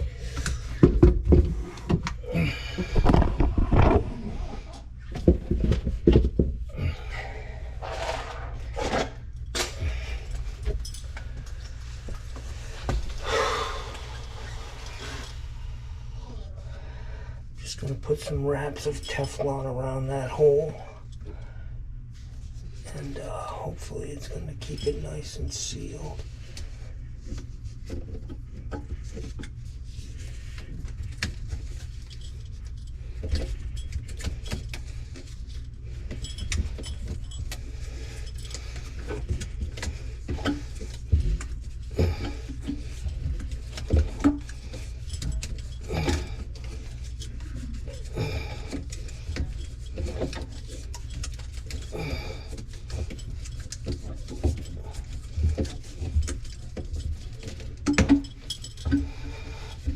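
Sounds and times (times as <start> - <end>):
steady low hum: 0.0 - 59.9
plumbing fittings and tools clicking: 31.2 - 59.9.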